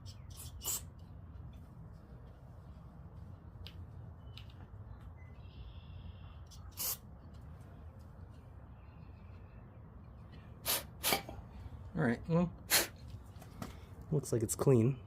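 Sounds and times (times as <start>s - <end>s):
low steady hum: 0.0s - 15.0s
aerosol can spraying: 0.4s - 0.9s, 6.7s - 7.0s.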